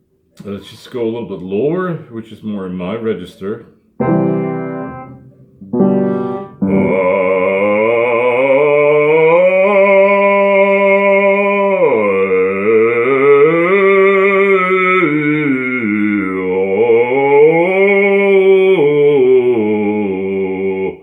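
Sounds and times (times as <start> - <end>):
operatic bass voice singing: 6.4 - 21.0.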